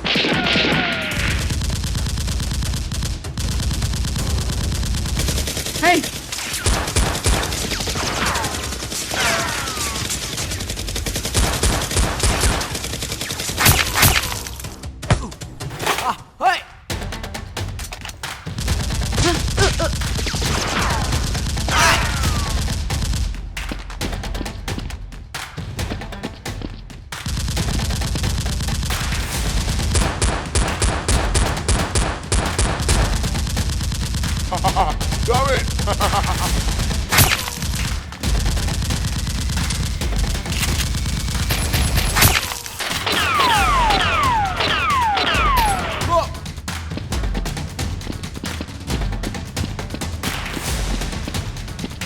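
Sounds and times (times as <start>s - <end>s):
rapid gunfire: 0.0s - 16.0s, 16.9s - 26.3s, 27.1s - 52.0s
background music: 0.0s - 52.0s
falling whistles: 41.7s - 46.1s.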